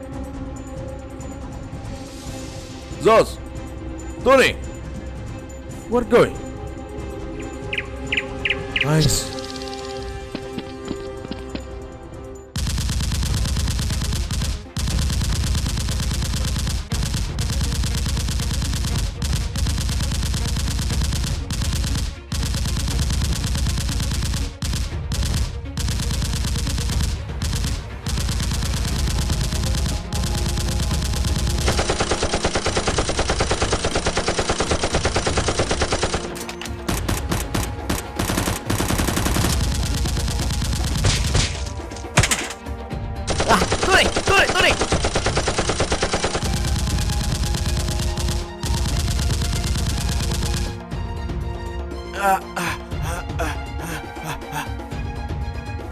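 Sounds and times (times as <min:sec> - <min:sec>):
rapid automatic gunfire: 0:12.6 - 0:42.5, 0:43.3 - 0:50.8.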